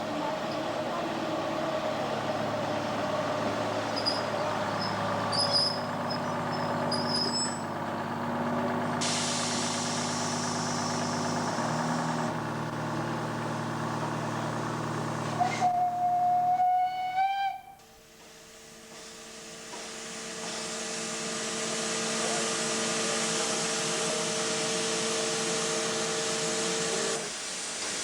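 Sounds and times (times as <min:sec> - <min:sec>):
steam engine humming: 0:00.0 - 0:27.1
steam hissing: 0:09.0 - 0:12.0, 0:18.9 - 0:28.0
steam whistle: 0:15.4 - 0:18.0.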